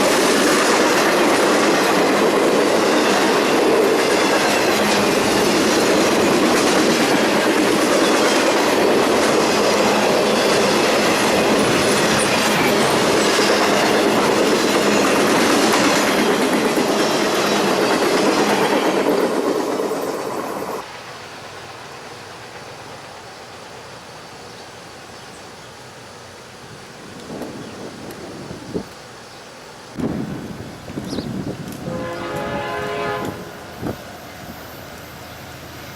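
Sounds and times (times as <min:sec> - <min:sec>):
wheels clicking over rail joints: 0:00.0 - 0:20.8
freight train rolling past: 0:00.0 - 0:25.1, 0:29.9 - 0:35.9.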